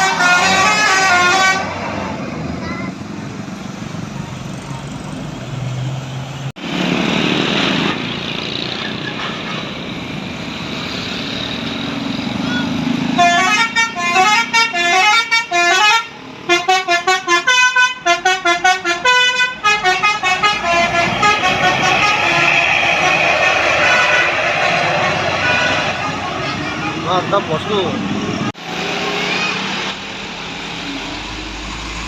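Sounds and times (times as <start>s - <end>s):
musical bus horn melody: 0.0s - 1.8s, 12.5s - 26.3s
bus engine: 0.0s - 32.0s
traffic noise: 0.0s - 32.0s.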